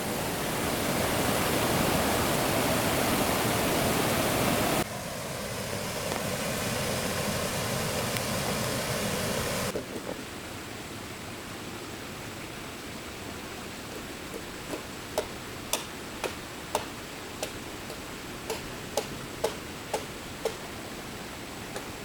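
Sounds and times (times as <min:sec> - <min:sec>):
background hiss: 0:00.0 - 0:22.0.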